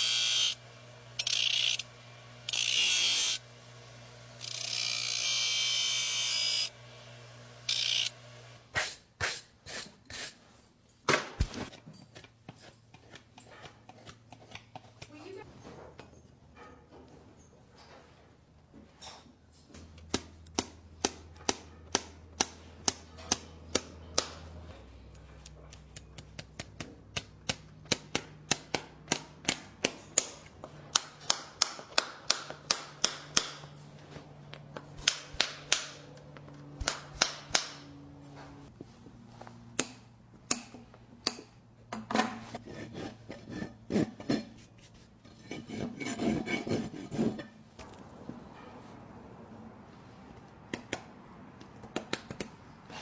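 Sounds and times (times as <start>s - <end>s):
rasping on hoof: 12.0s - 15.2s, 42.5s - 47.6s.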